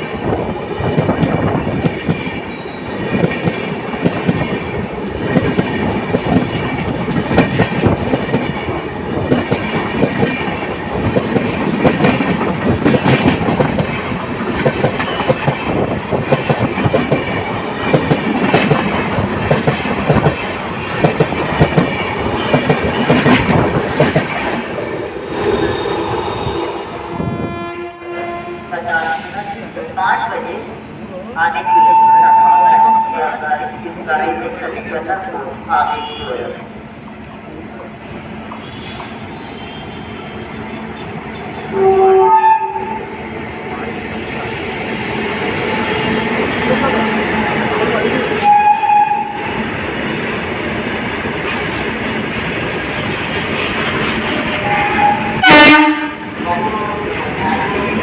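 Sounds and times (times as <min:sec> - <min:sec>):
train rumbling past: 0:00.0 - 0:58.0
train wheels clattering: 0:00.4 - 0:26.7
locomotive horn blast: 0:25.5 - 0:29.2, 0:41.7 - 0:43.0, 0:48.4 - 0:49.4, 0:54.6 - 0:56.4.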